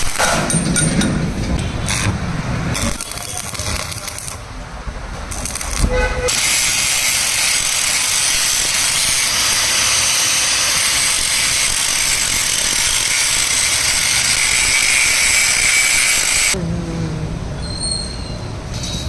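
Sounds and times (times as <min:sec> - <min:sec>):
welding arc crackling hiss: 0:00.0 - 0:00.4, 0:01.6 - 0:04.6, 0:05.2 - 0:16.6.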